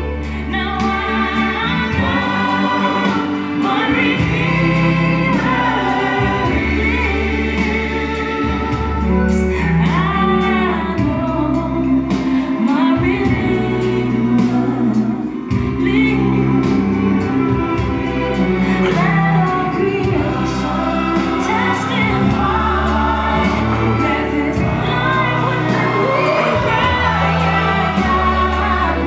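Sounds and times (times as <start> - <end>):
band playing bass keyboard and drums: 0.0 - 29.0
gospel singing voices: 0.0 - 29.0.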